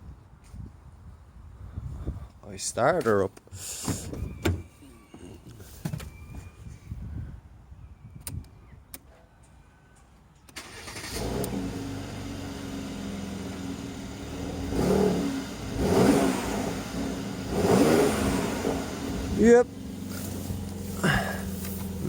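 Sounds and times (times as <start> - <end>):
car engine starting and revving: 10.6 - 22.0.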